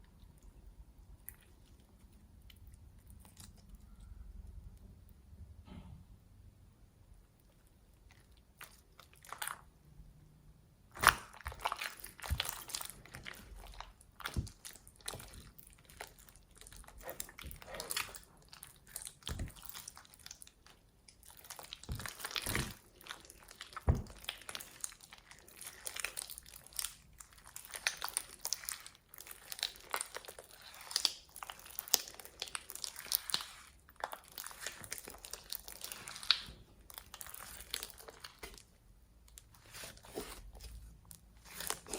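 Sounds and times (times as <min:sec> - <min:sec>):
slime crinkling and crackling: 0:07.6 - 0:09.7, 0:10.9 - 0:41.9.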